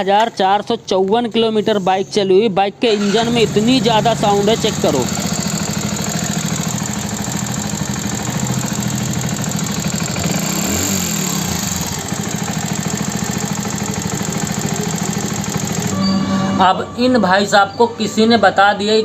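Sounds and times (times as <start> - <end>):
motorcycle engine idling: 3.0 - 16.0
rapid mechanical ticking clatter: 3.0 - 16.0.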